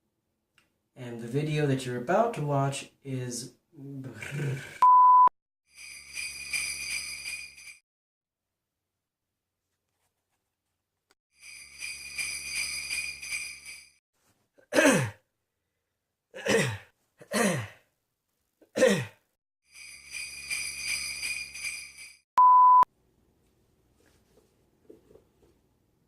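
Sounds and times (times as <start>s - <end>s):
high beep: 4.8s - 5.3s, 22.4s - 22.9s
jingle bells shaking: 5.7s - 7.8s, 11.4s - 14.0s, 19.7s - 22.2s
person coughing: 14.6s - 15.3s, 16.4s - 17.9s, 18.6s - 19.2s.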